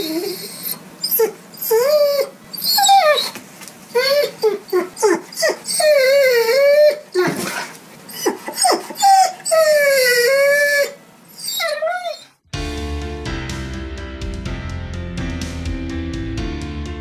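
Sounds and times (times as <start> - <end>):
dog whimpering: 0.0 - 12.4
dog whining: 0.0 - 12.4
music: 12.4 - 17.0.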